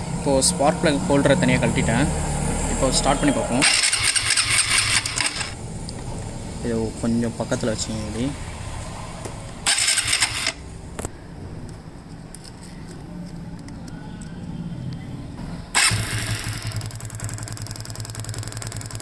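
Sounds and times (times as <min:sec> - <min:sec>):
electric starter cranking engine: 0:03.5 - 0:05.6, 0:09.6 - 0:10.6, 0:15.7 - 0:19.0.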